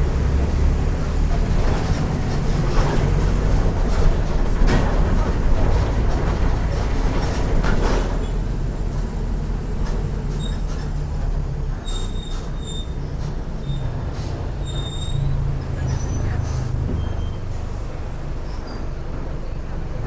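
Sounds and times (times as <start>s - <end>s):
bus diesel engine rumbling: 0.0s - 20.0s
faint high squeaks: 11.7s - 19.0s.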